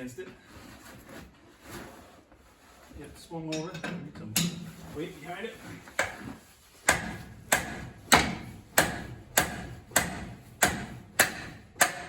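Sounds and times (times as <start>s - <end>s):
hammer striking wrench handle: 6.9s - 12.0s.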